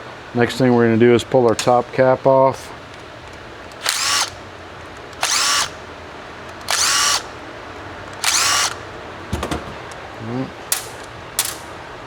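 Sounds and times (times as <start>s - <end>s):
cordless power driver whining: 1.4s - 10.0s
sharp clicks: 2.9s - 5.8s, 6.5s - 7.3s, 8.1s - 8.8s.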